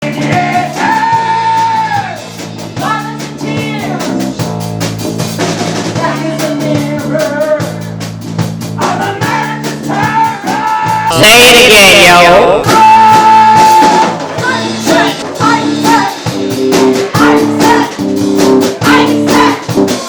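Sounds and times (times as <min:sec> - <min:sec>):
drum and cymbal hits: 0:00.0 - 0:20.0
rock band playing: 0:00.0 - 0:20.0
person singing: 0:10.6 - 0:16.2.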